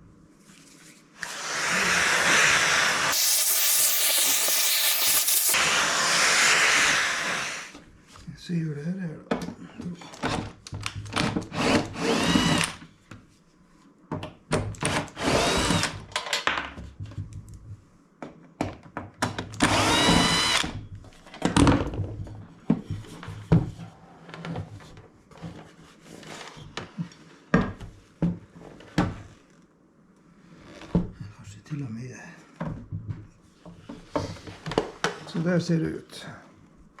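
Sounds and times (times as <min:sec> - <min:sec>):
cordless drill whining: 0:01.2 - 0:07.8, 0:11.5 - 0:12.8, 0:15.2 - 0:16.0, 0:19.6 - 0:20.8.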